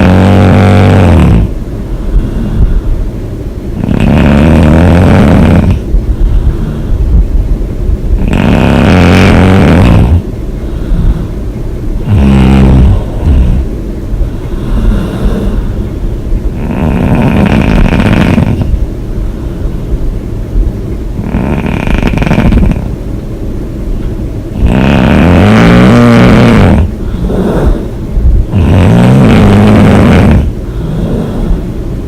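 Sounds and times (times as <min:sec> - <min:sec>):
woman snoring: 0:00.0 - 0:01.6, 0:03.8 - 0:05.8, 0:08.2 - 0:10.2, 0:12.0 - 0:13.7, 0:14.6 - 0:15.8, 0:16.6 - 0:18.8, 0:21.2 - 0:22.9, 0:24.6 - 0:31.7.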